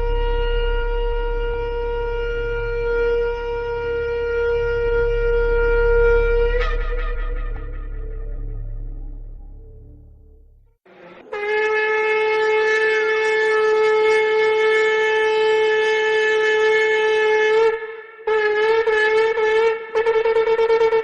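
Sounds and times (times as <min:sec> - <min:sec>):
shofar blasts: 0:00.0 - 0:10.1, 0:11.0 - 0:21.0.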